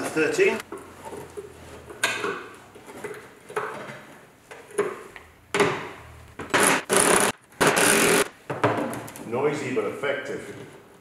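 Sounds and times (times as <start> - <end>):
impact wrench bursts: 6.5 - 8.3.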